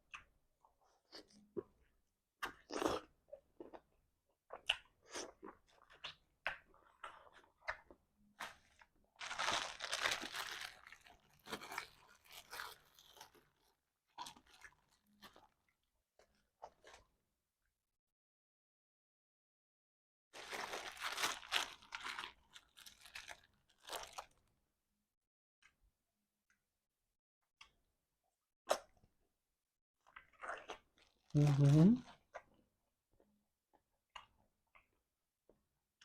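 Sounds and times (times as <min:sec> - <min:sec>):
person chewing and smacking: 0:02.4 - 0:08.8, 0:30.0 - 0:31.2, 0:33.7 - 0:35.0.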